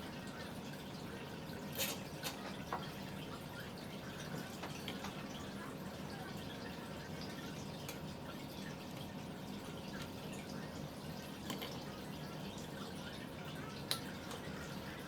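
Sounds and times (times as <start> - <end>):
faint small clicks and taps: 11.4 - 11.8, 13.8 - 14.5.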